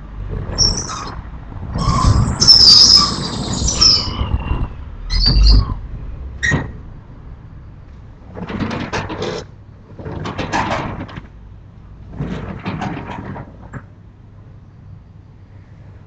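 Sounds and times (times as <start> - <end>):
low rumbling: 0.0 - 14.5
sliding window scraping with squeak: 0.3 - 6.8.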